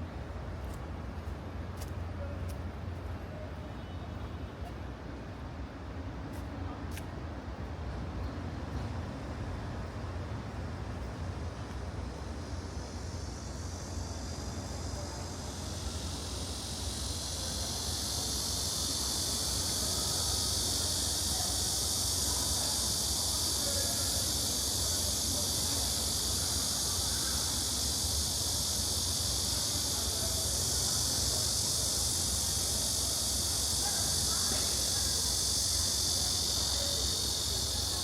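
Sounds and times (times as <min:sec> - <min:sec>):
high-pitched insect drone: 0:12.1 - 0:38.0.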